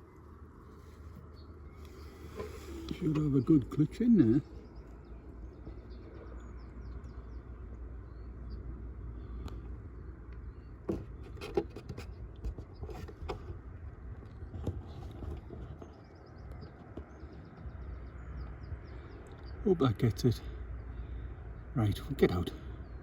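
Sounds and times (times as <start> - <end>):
wind rumble on microphone: 4.4 - 19.6.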